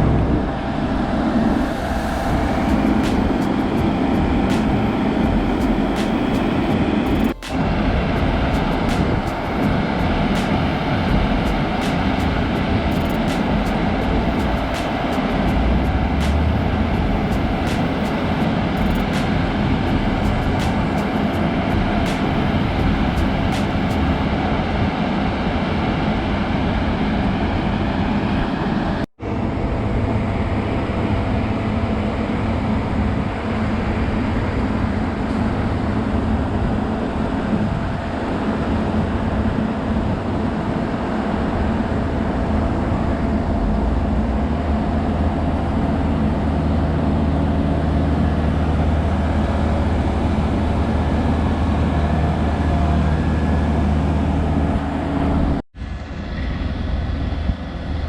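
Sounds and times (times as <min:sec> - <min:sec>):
deep engine hum: 0:00.0 - 0:24.9, 0:41.1 - 0:58.0
vehicle engine rumble: 0:00.0 - 0:24.9, 0:41.1 - 0:58.0.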